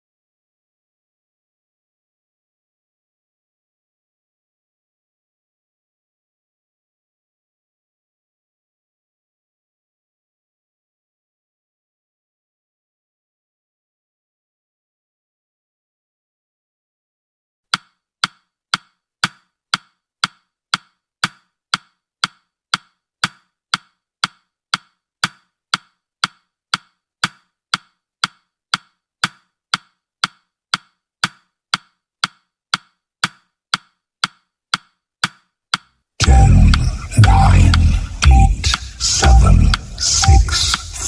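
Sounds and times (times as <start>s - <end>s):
timer ticking clicks: 17.8s - 41.0s.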